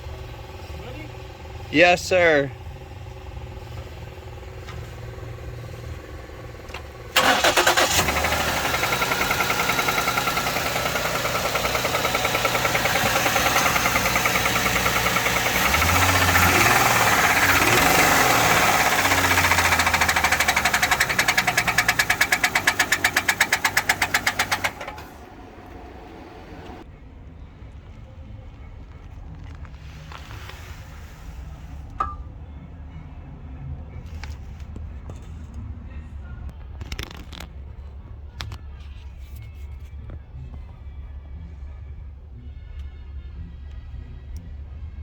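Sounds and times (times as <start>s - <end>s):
engine knocking: 7.2s - 25.3s.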